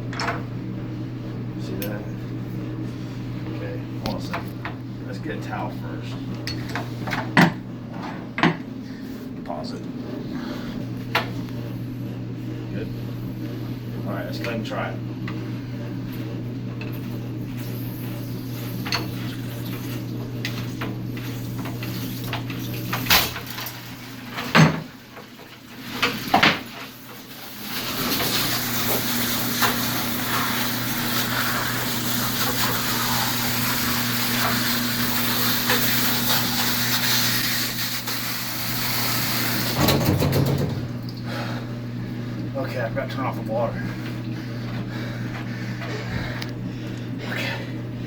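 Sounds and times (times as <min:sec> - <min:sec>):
water spraying under pressure: 0:27.2 - 0:40.0.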